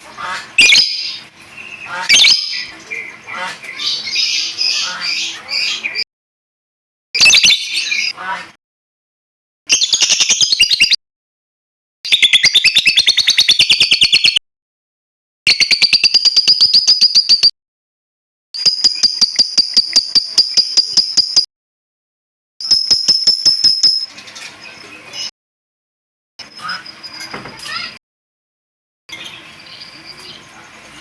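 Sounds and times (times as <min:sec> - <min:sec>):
songbird trilling call: 0:00.2 - 0:06.0, 0:26.4 - 0:27.9.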